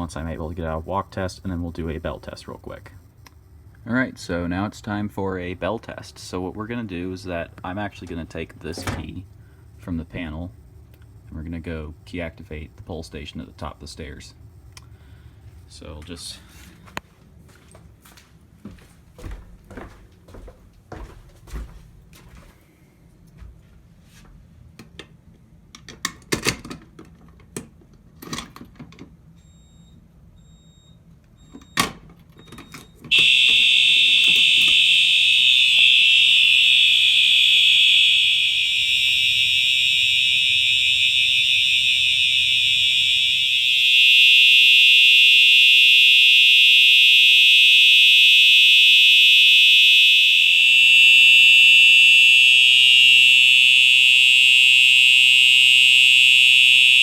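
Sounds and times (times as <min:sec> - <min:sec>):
fire alarm bells ringing: 0:32.4 - 0:57.0.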